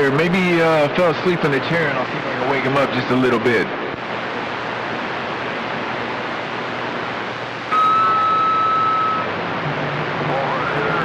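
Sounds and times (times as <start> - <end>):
radio static hiss: 0.0 - 11.0
steady whistle tone: 7.7 - 9.3.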